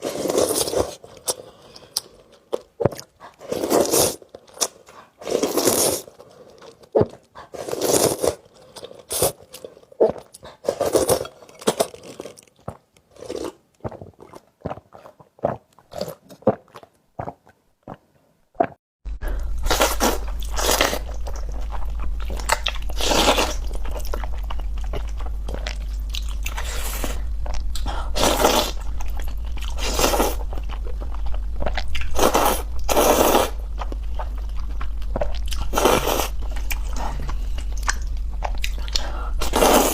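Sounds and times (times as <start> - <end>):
chewing and crunchy bites: 0.0 - 18.0, 18.6 - 39.9
steady low hum: 19.1 - 39.9.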